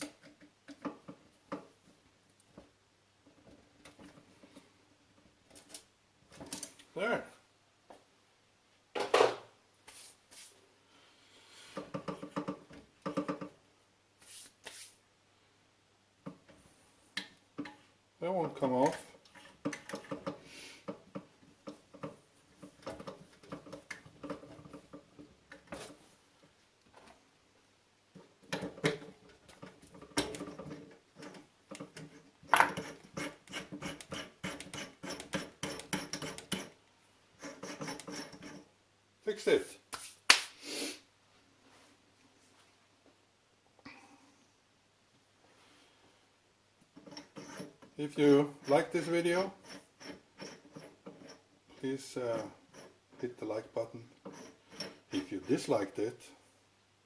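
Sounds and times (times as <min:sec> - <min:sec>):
metal scraping: 0:37.4 - 0:38.7, 0:47.0 - 0:53.0, 0:54.2 - 0:55.7.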